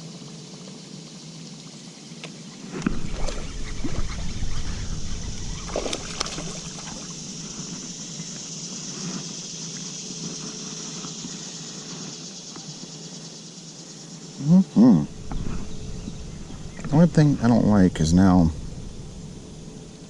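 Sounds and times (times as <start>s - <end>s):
high-pitched insect buzz: 0.0s - 20.0s
low rumble: 2.8s - 8.0s, 15.0s - 20.0s.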